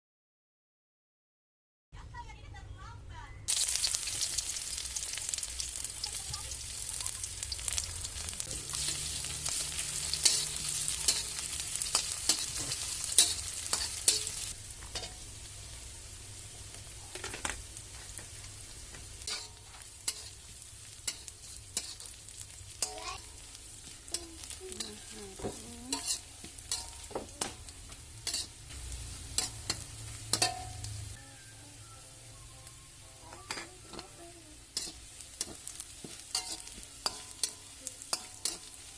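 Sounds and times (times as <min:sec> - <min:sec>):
food sizzling in hot oil: 0:03.5 - 0:38.9
spatula scraping a pan: 0:08.1 - 0:15.2, 0:19.2 - 0:22.2, 0:23.8 - 0:31.1, 0:33.5 - 0:38.9.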